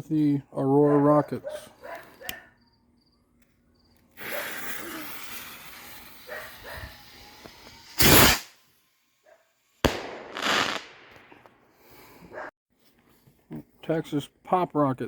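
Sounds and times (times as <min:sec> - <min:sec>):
skyrocket hissing: 0:04.2 - 0:08.6, 0:10.0 - 0:11.0
skyrocket bursting bang: 0:08.0 - 0:08.5, 0:09.9 - 0:11.4.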